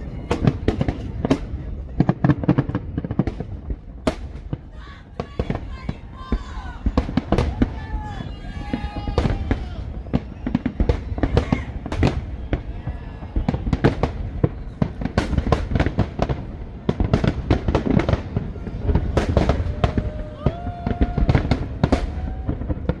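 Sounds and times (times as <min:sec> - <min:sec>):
fireworks bangs and crackling: 0:00.0 - 0:23.0.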